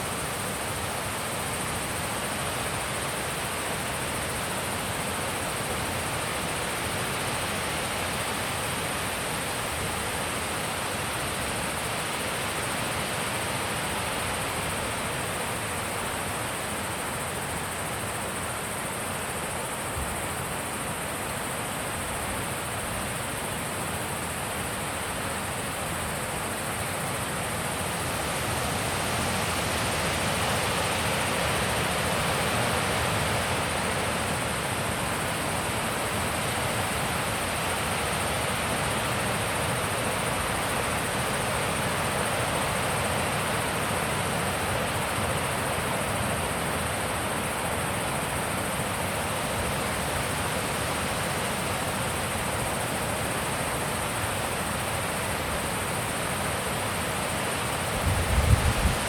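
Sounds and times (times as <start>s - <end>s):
wind blowing: 58.0s - 59.0s.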